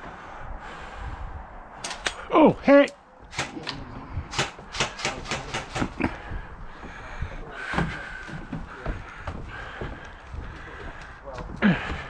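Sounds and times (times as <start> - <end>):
airsoft guns firing: 1.8 - 2.3, 3.3 - 6.0.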